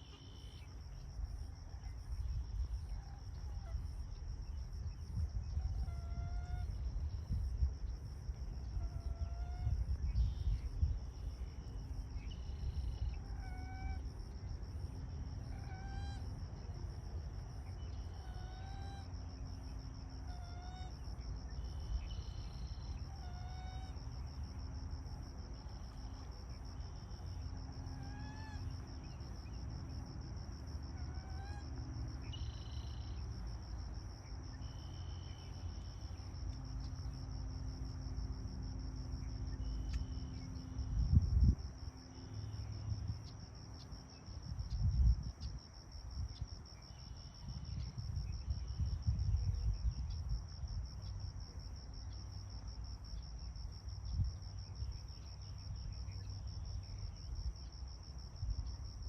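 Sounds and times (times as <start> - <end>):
insect drone: 0.0 - 59.0
rising insect call notes: 0.0 - 59.0.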